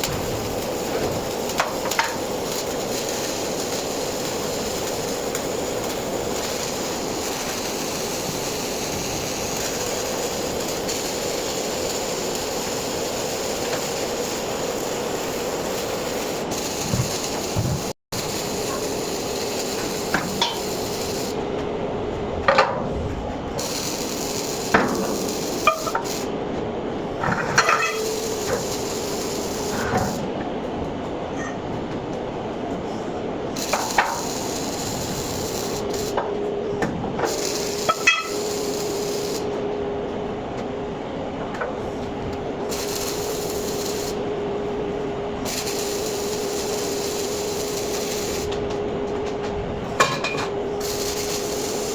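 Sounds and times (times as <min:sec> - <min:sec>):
welding arc crackling: 0:00.0 - 0:21.4, 0:23.5 - 0:26.3, 0:27.0 - 0:30.3, 0:33.4 - 0:36.2, 0:37.2 - 0:39.6, 0:42.2 - 0:48.8, 0:50.6 - 0:51.9.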